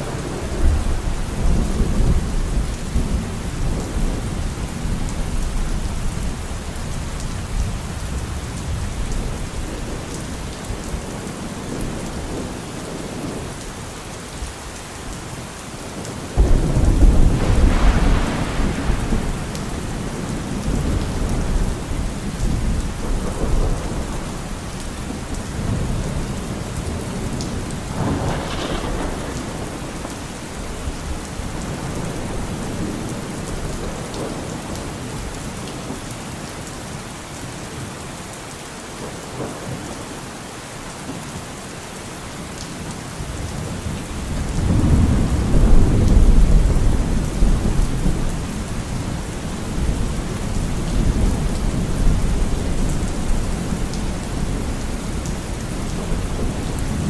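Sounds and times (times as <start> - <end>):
rolling thunder: 0.0 - 5.8, 16.4 - 34.5, 43.9 - 57.0
steady rain falling: 0.0 - 57.0.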